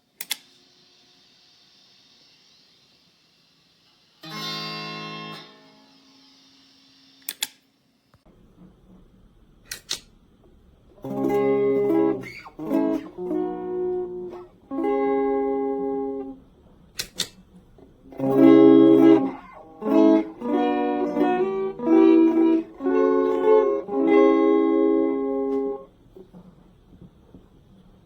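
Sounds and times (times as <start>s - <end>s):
sharp clicks: 0.2s - 0.6s, 7.2s - 7.6s, 9.7s - 10.1s, 17.0s - 17.4s
overdriven electric guitar chords: 4.2s - 6.5s, 10.9s - 16.5s, 17.8s - 26.1s.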